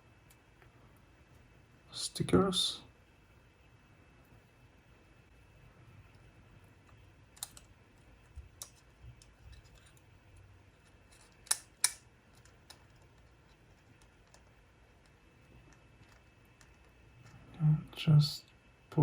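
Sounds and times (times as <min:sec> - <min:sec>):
small clicks and taps: 0:06.1 - 0:07.7, 0:10.8 - 0:17.4.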